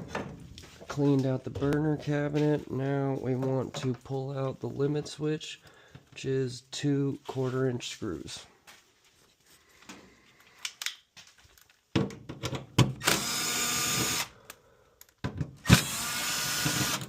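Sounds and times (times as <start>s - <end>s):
power drill motor whine: 13.0s - 14.3s, 15.6s - 17.0s.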